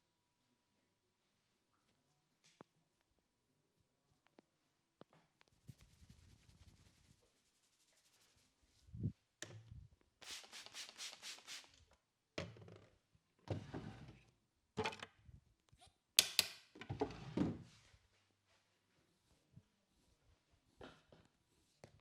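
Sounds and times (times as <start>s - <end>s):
rapid pats: 5.6s - 8.4s, 10.2s - 11.8s.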